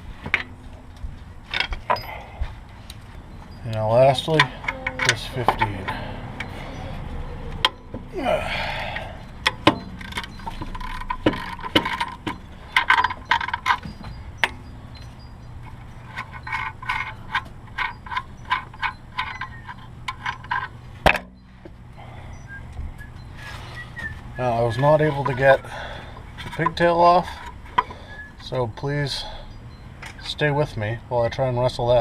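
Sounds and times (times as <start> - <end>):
hand tools clinking on metal: 1.5 - 2.4, 3.0 - 6.8, 7.6 - 21.3, 24.5 - 31.4.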